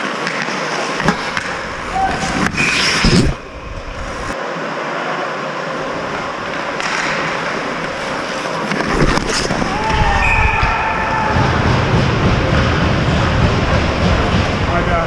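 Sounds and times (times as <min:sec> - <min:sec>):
skates scraping on ice: 0:00.0 - 0:04.4, 0:06.0 - 0:10.7.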